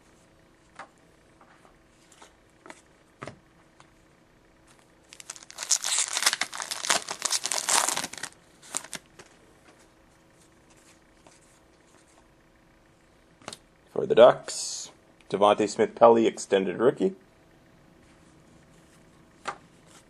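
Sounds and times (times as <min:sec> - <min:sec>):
foil wrapper tearing and crinkling: 0:05.1 - 0:09.0.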